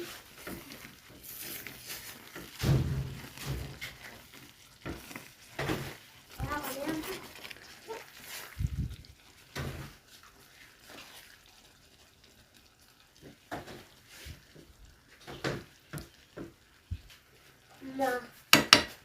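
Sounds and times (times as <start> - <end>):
dull thump: 2.6 - 3.8
utensil knocking and scraping pan: 18.5 - 19.0.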